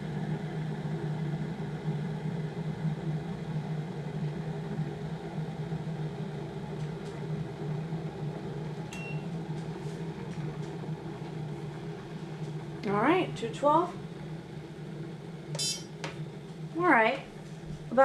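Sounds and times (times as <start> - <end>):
electric kettle heating water: 0.0 - 18.0
short high beep: 15.6 - 15.8.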